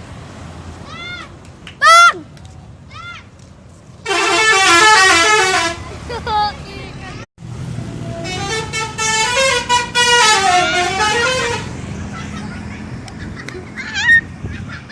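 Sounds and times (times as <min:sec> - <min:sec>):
bus engine rumbling: 0:00.0 - 0:14.9
bus musical air horn melody: 0:04.0 - 0:05.8, 0:08.0 - 0:11.8.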